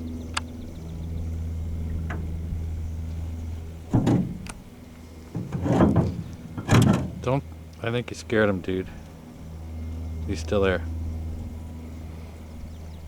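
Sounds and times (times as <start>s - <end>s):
boat motor humming: 0.0s - 13.0s
loud knock: 3.9s - 4.6s.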